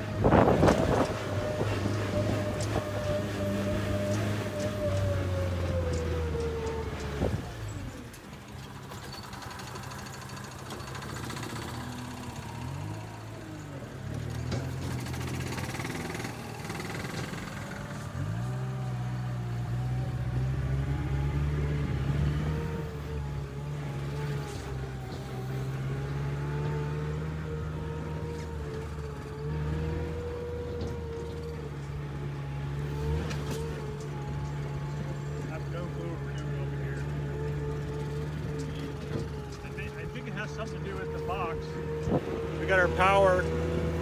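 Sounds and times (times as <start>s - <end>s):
small vehicle engine running: 0.0s - 44.0s.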